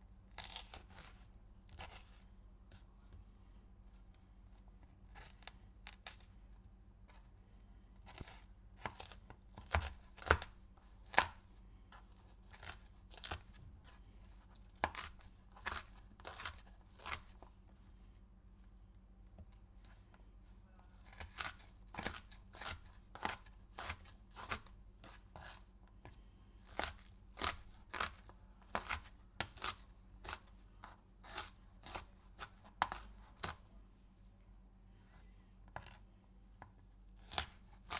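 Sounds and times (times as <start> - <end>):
knife cutting through pepper: 0.3 - 2.8, 5.1 - 6.3, 8.0 - 11.4, 12.0 - 17.5, 21.0 - 33.6, 37.2 - 37.9.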